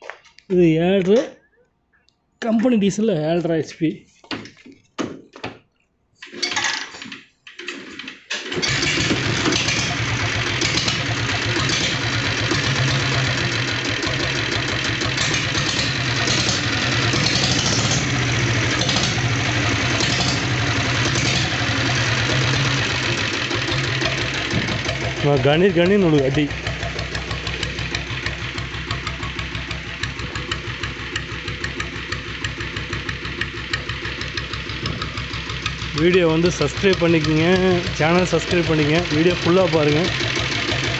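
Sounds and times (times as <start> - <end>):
diesel engine idling: 8.7 - 40.9.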